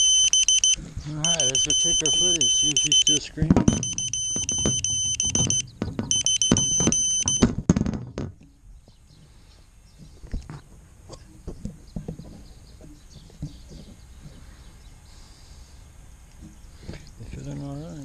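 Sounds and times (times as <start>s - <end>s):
electronic beeper pulses: 0.0s - 7.5s
handling knocks and thumps: 3.4s - 8.4s.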